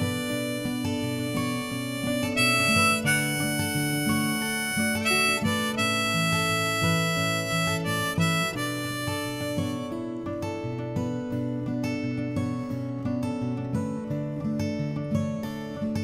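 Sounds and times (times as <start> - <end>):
harmonica melody: 0.0 - 10.5
acoustic guitar: 0.0 - 16.0.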